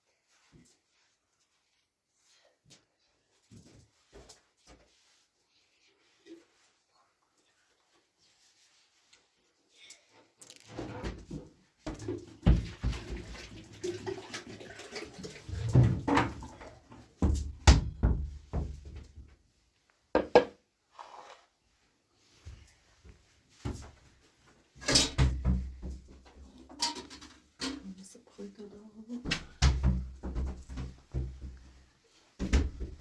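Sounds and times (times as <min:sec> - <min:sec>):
household objects knocking and scraping: 0:20.2 - 0:20.6.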